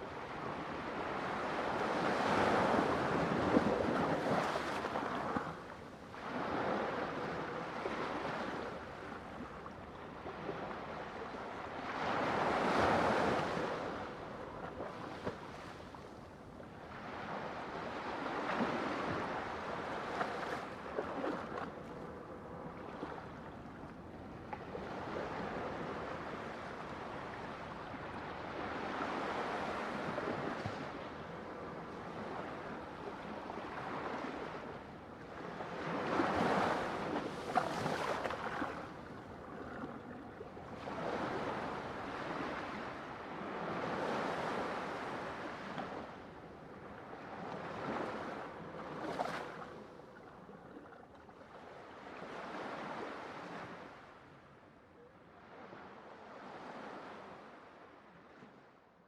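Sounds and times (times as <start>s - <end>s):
ocean waves breaking on shore: 24.7s - 50.0s.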